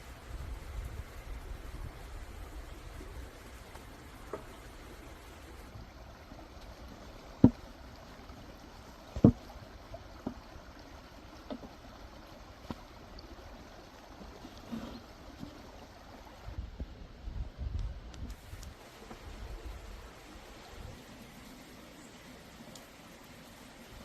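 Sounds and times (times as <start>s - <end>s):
steady hiss: 0.0s - 9.5s, 17.6s - 24.0s.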